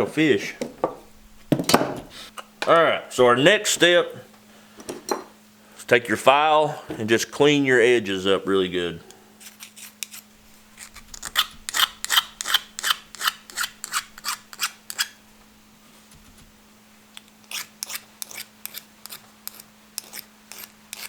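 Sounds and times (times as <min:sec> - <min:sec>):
hand file rasping on metal: 0:09.4 - 0:15.2, 0:17.4 - 0:21.0.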